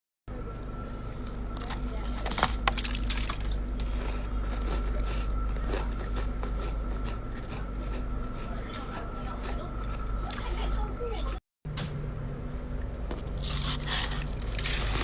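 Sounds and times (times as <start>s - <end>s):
frost ice crunching: 1.2s - 8.1s, 13.1s - 15.0s
loud sharp ice cracks: 1.6s - 3.6s, 13.4s - 15.0s.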